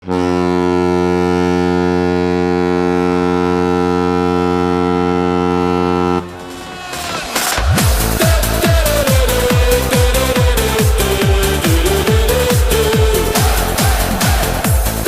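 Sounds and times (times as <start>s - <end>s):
goal horn blast: 0.0s - 8.5s.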